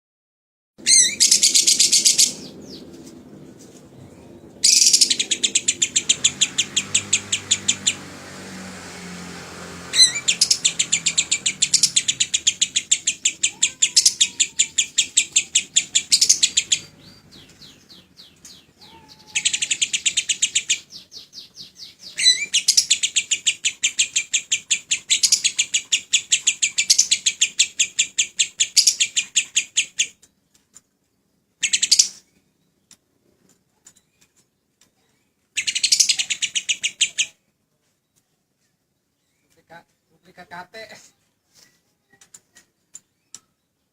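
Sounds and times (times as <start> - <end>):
lovebird chattering trills: 0.9 - 2.8, 4.6 - 8.0, 9.9 - 30.2, 35.6 - 37.4.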